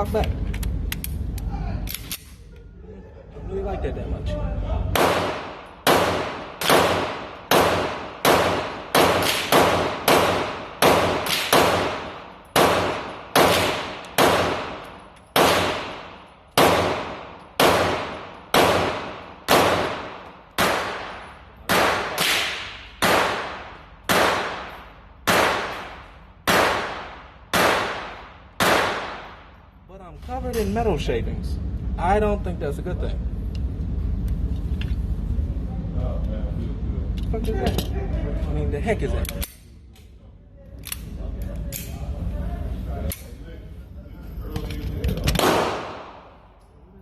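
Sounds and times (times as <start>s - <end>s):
gunshots ringing out: 4.9s - 29.5s, 45.3s - 46.4s.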